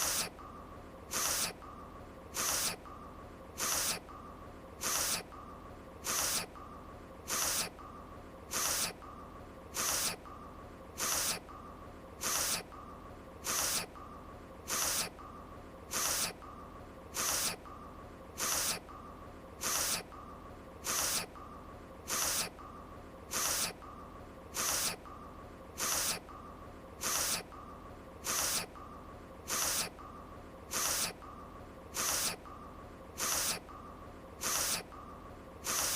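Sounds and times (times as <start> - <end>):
person sniffling through nose: 0.0 - 0.4, 1.1 - 1.6, 2.3 - 2.8, 3.6 - 4.0, 4.8 - 5.3, 6.0 - 6.5, 7.3 - 7.7, 8.5 - 9.0, 9.7 - 10.2, 11.0 - 11.4, 12.2 - 12.7, 13.4 - 13.9, 14.7 - 15.1, 15.9 - 16.4, 17.1 - 17.6, 18.4 - 18.8, 19.6 - 20.1, 20.8 - 21.3, 22.1 - 22.5, 24.6 - 25.0, 25.8 - 26.2, 27.0 - 27.5, 28.2 - 28.7, 30.7 - 31.2, 32.0 - 32.4, 33.2 - 33.6, 34.4 - 34.9, 35.6 - 35.9
faint steady hum: 0.0 - 35.9.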